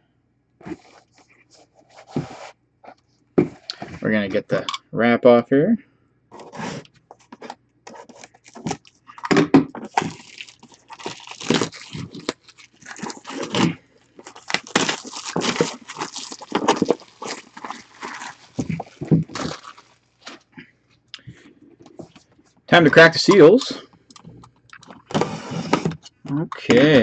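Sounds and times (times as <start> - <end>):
plastic wrap crinkling and tearing: 7.9 - 20.5.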